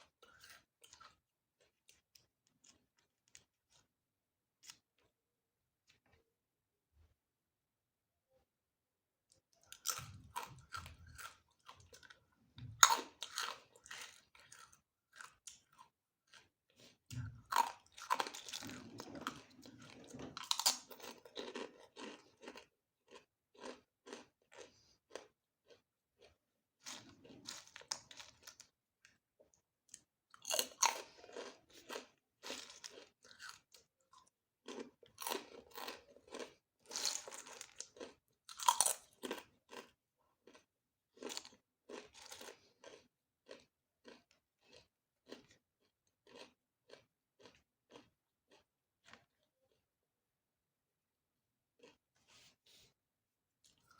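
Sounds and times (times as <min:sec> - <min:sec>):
crisp food crunching: 0:09.6 - 0:28.8, 0:30.0 - 0:49.3.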